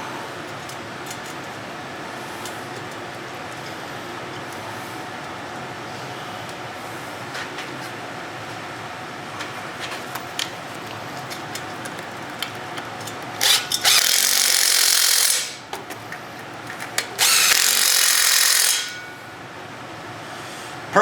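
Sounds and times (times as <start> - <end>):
parts clicking: 10.8 - 18.8.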